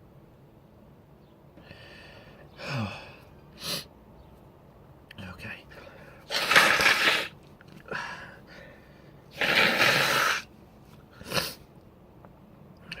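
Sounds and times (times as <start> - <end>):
sharp burst of breath: 6.0 - 7.3, 7.9 - 10.5, 11.2 - 11.6
person sneezing: 6.3 - 7.3, 9.4 - 10.5, 11.2 - 11.6.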